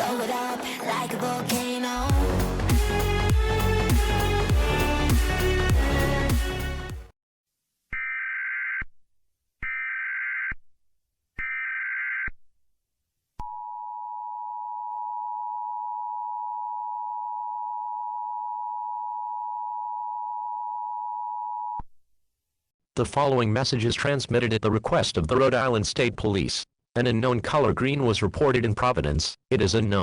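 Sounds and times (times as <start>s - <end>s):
music: 0.0s - 7.1s.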